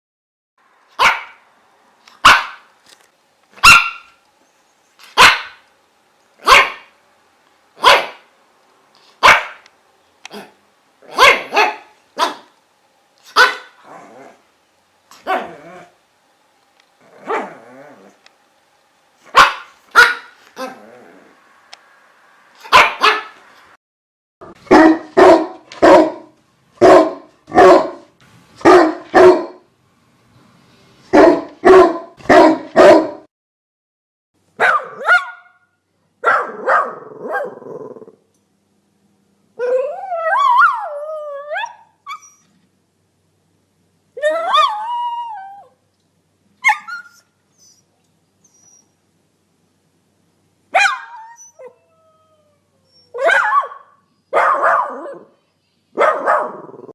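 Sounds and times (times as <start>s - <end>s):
dogs barking: 1.0s - 1.4s, 2.2s - 2.7s, 3.6s - 4.2s, 5.1s - 5.7s, 6.4s - 7.0s, 7.8s - 8.3s, 9.2s - 9.7s, 10.3s - 12.6s, 13.3s - 13.8s, 19.3s - 20.8s, 22.6s - 23.4s, 24.6s - 29.6s, 31.1s - 33.3s, 34.6s - 35.6s, 36.2s - 37.6s, 50.7s - 51.5s, 53.1s - 55.3s, 56.0s - 56.9s
dog wavering cries: 39.6s - 42.5s, 44.2s - 45.7s, 46.6s - 48.9s, 50.8s - 55.3s.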